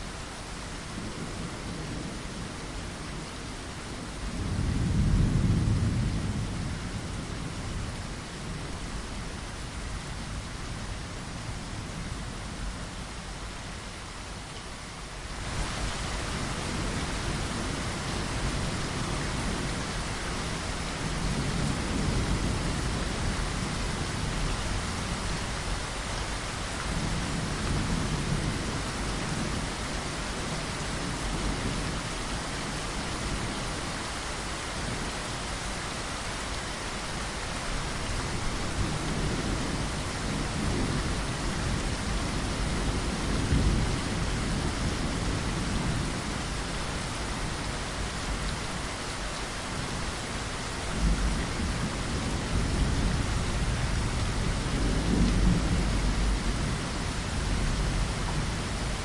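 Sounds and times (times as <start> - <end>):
rain against window glass: 0.0 - 59.0
thunder rumbling: 4.4 - 7.6, 50.9 - 59.0.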